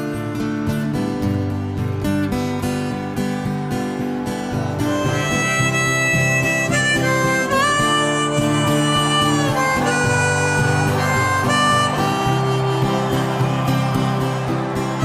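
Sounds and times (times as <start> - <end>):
strummed acoustic guitar: 0.0 - 15.0
harmonica melody with bends: 3.5 - 15.0.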